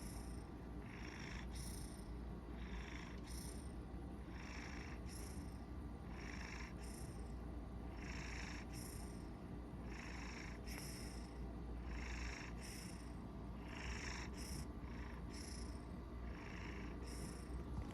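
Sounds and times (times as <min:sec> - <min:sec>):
cat purring: 0:00.0 - 0:03.7, 0:07.9 - 0:17.9.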